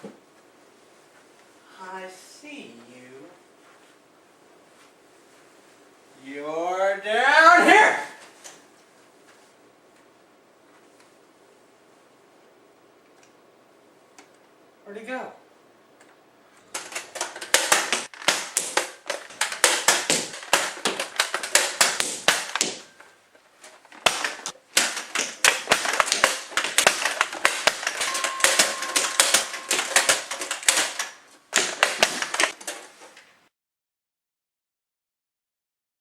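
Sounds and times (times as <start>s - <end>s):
rapid sharp clicks and snaps: 16.0s - 23.0s, 23.8s - 32.8s.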